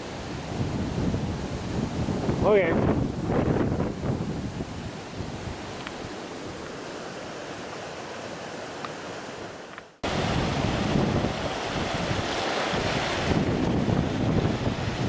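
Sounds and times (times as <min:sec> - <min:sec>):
wind on microphone: 0:00.0 - 0:06.7, 0:10.0 - 0:15.0
creek water rushing: 0:00.0 - 0:15.0.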